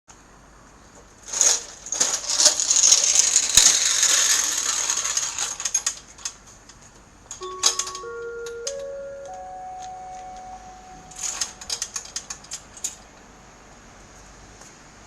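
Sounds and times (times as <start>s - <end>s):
loudspeaker chime tones: 7.4s - 11.7s.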